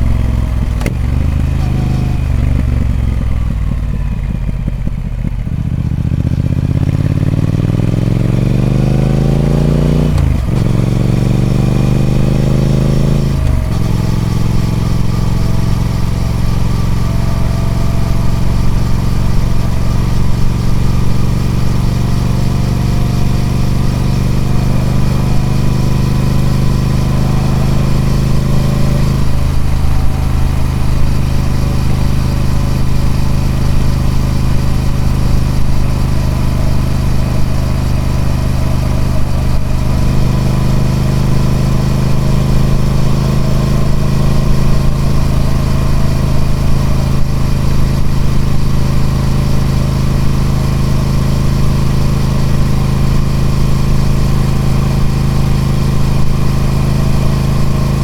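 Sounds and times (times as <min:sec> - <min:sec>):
motorcycle engine accelerating: 0:00.0 - 0:58.0.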